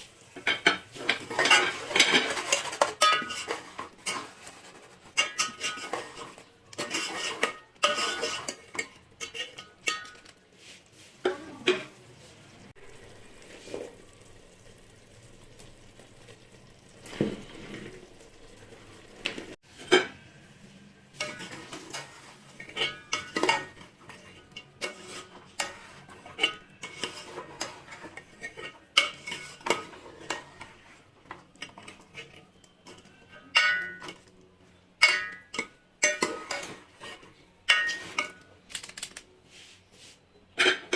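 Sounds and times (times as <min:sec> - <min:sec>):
metal spoon scraping in pot: 0:00.3 - 0:12.0, 0:21.1 - 0:34.3, 0:35.0 - 0:38.6.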